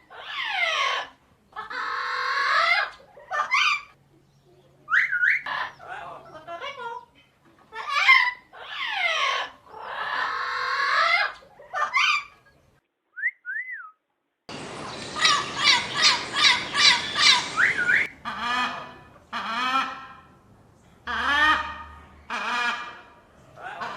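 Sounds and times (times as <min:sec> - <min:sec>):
parrots calling and squawking: 0:14.5 - 0:18.7.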